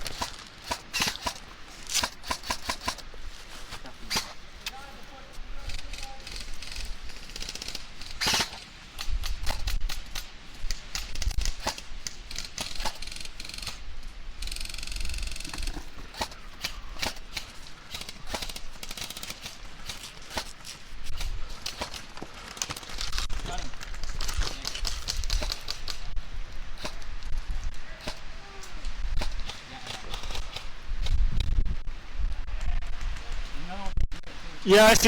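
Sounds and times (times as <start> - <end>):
airsoft gun shots: 0.1 - 1.4.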